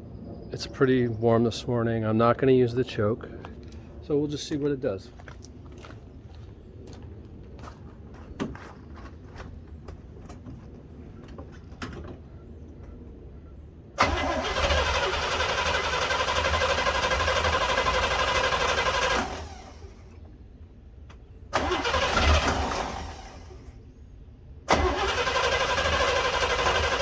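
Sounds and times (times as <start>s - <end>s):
starter cranking engine: 14.0s - 20.1s, 21.6s - 23.6s, 24.7s - 27.0s.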